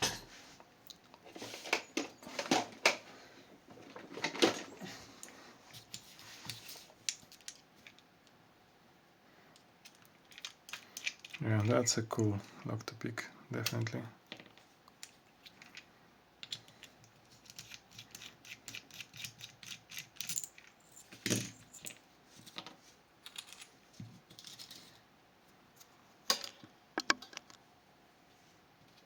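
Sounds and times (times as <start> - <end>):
small metal lock parts clicking: 9.8 - 11.4, 16.4 - 20.8.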